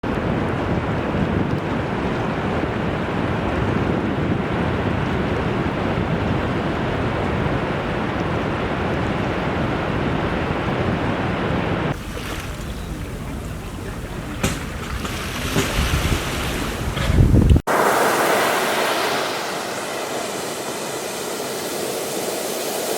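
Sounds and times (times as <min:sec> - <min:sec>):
wind buffeting microphone: 0:00.0 - 0:17.7
ocean waves and surf: 0:00.1 - 0:22.9.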